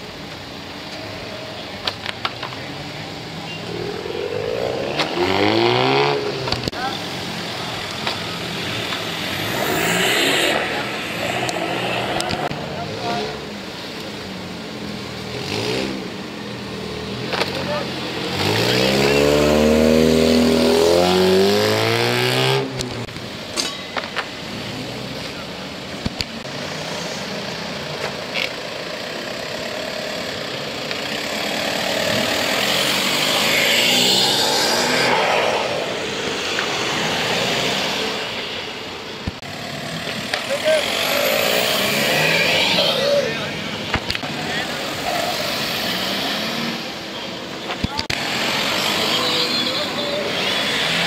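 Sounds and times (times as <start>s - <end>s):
car engine revving: 3.0s - 23.1s, 30.0s - 47.1s.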